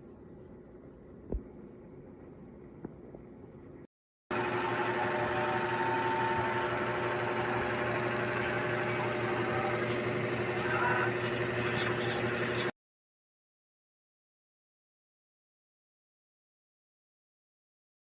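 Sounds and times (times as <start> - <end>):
small machine running rhythmically: 4.3 - 12.7.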